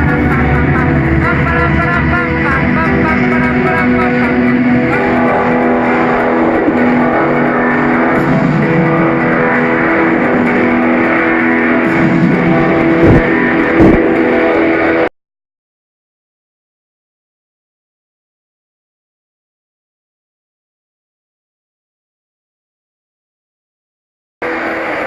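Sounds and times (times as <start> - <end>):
heavy low booms: 0.0 - 15.0
electro house music: 0.0 - 15.1.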